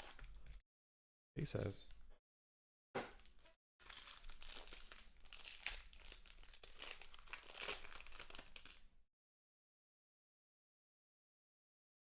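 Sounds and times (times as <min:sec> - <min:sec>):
plastic wrapping torn and crinkled: 0:00.0 - 0:00.6, 0:03.1 - 0:08.9.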